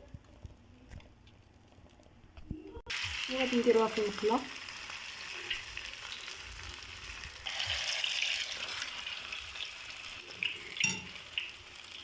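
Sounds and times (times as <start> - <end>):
potatoes sizzling in oil: 2.9 - 12.0.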